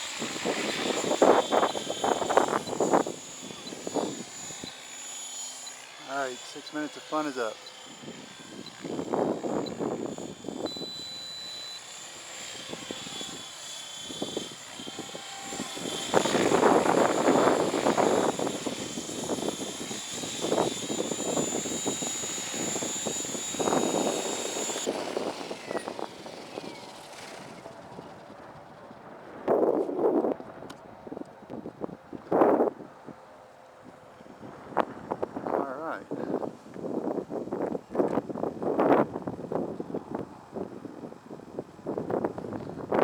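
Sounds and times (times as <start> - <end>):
rotor noise: 0.0 - 27.7
rc helicopter motor whine: 0.0 - 43.0
wind rumble on microphone: 14.1 - 26.8, 27.4 - 33.1, 34.2 - 43.0.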